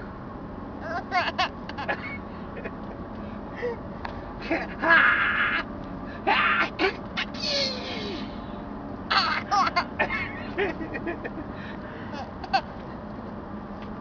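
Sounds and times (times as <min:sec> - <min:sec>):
baby laughing: 0:00.8 - 0:02.2, 0:09.1 - 0:10.6, 0:12.2 - 0:12.7
man sneezing: 0:07.2 - 0:08.4.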